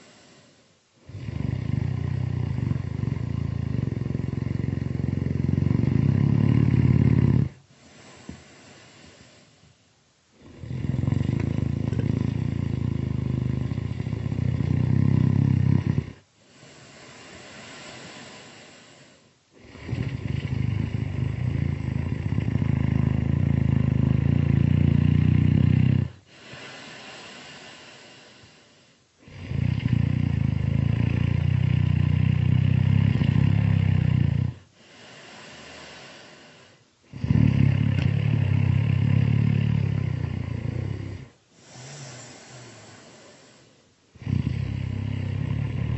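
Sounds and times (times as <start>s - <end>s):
loud heavy snoring: 0.0s - 9.5s, 10.4s - 45.9s.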